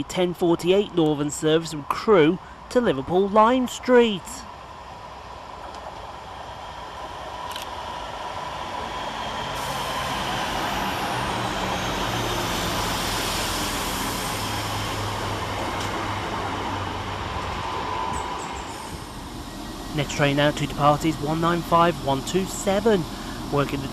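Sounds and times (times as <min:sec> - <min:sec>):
train rumble: 0:00.0 - 0:23.9
train whine falling in pitch: 0:08.0 - 0:23.9.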